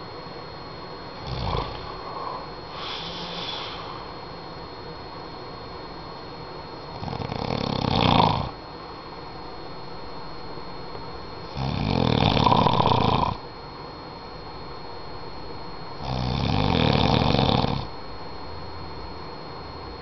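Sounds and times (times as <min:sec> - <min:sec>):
man snoring: 0:01.2 - 0:04.2, 0:07.0 - 0:08.6, 0:11.5 - 0:13.4, 0:16.0 - 0:17.9
quiet breathing: 0:01.6 - 0:04.3.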